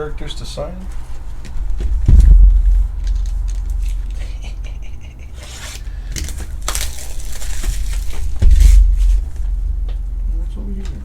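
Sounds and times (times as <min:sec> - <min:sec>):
steady low hum: 0:00.0 - 0:11.0
cards and wrappers rustling: 0:05.4 - 0:09.2.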